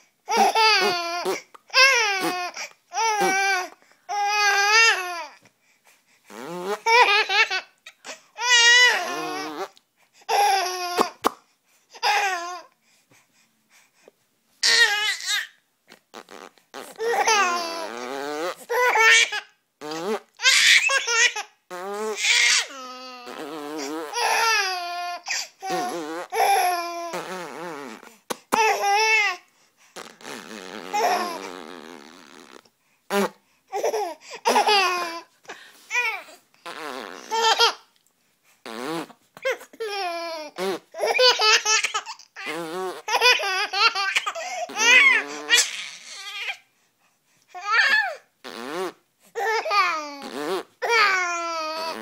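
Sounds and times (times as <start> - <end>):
baby laughing: 6.8 - 7.7, 30.9 - 31.5, 37.2 - 37.9, 41.0 - 46.6.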